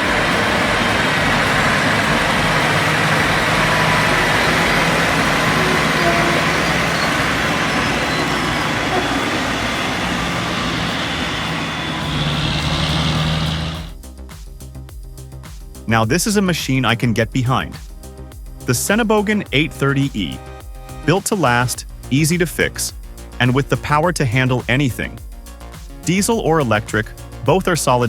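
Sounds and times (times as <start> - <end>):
truck diesel engine running: 0.0 - 14.0.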